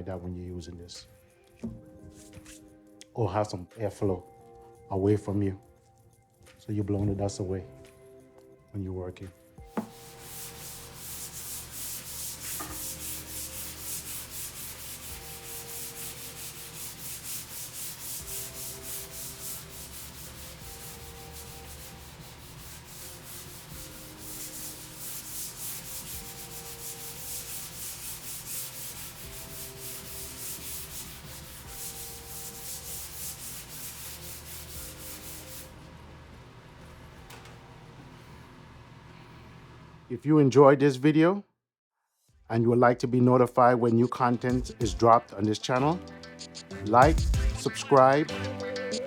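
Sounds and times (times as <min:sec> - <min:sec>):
hand sanding scratching strokes: 0:09.8 - 0:35.9.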